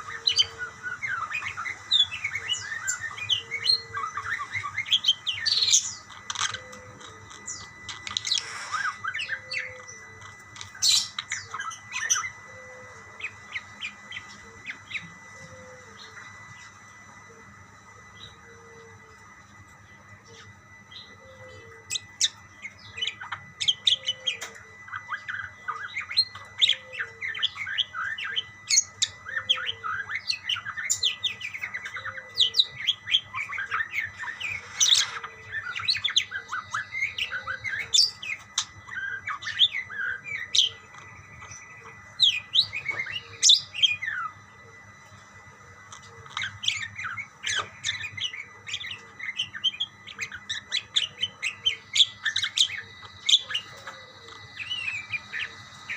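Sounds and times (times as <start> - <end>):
budgerigars chirping: 0.0 - 12.4, 21.9 - 44.3, 46.3 - 55.9.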